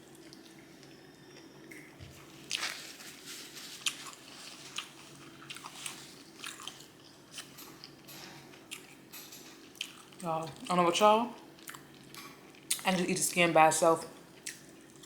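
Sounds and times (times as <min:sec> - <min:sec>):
crispy chicken skin crunching: 0:02.4 - 0:08.0
wet chewing: 0:03.6 - 0:09.0, 0:09.6 - 0:10.7, 0:11.5 - 0:13.0.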